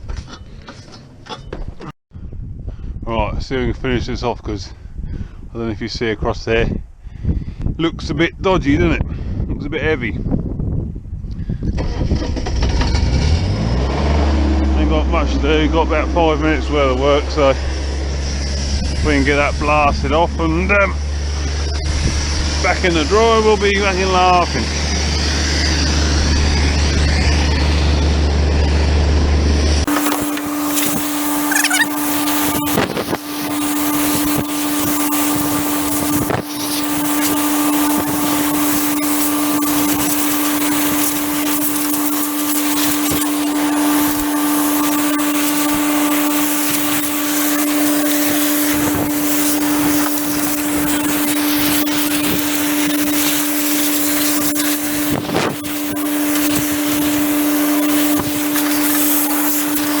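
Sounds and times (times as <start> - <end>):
air compressor humming: 29.8 - 60.0
compressed air blow gun hissing: 29.9 - 60.0.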